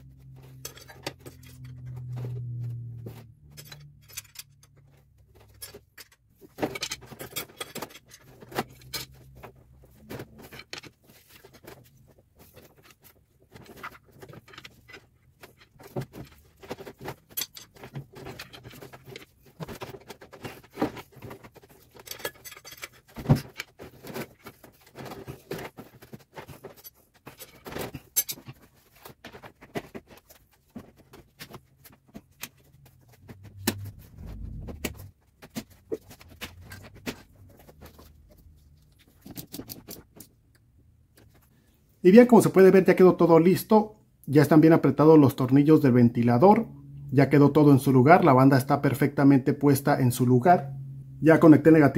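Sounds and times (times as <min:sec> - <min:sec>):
metal tools clinking: 0:00.1 - 0:02.5, 0:03.1 - 0:11.8, 0:12.4 - 0:34.0.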